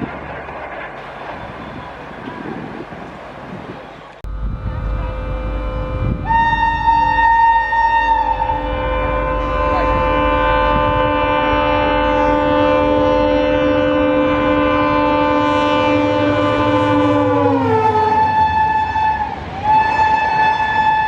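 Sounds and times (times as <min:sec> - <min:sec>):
train rushing past: 0:00.0 - 0:21.0
train horn blast: 0:04.3 - 0:21.0.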